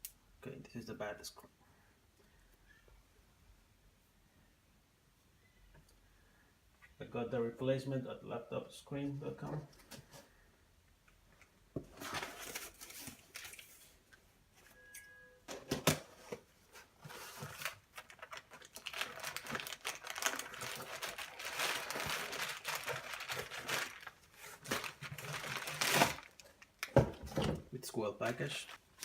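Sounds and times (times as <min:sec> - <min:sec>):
packaging crinkling and rustling: 0:11.9 - 0:14.0, 0:16.8 - 0:27.6, 0:28.2 - 0:29.0.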